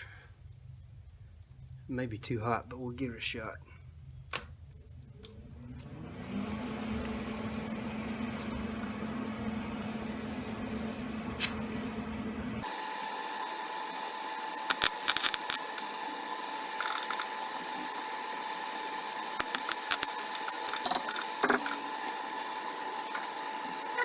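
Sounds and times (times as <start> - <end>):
steady hum: 0.0 - 13.6, 14.2 - 24.0
welder arc crackling: 14.3 - 24.0.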